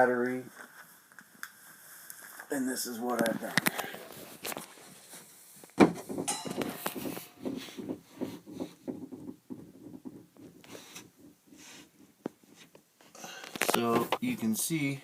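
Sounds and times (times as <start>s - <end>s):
rustling: 0.4s - 14.4s
soft footsteps: 0.6s - 14.3s
sharp knock: 6.0s - 7.6s.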